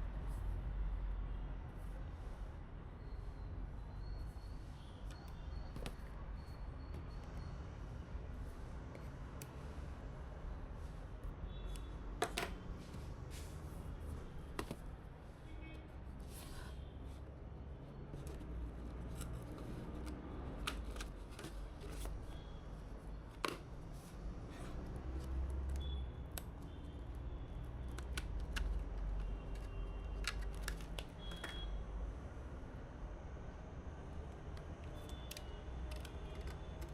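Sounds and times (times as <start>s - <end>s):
clicks and taps of components: 34.4s - 36.9s.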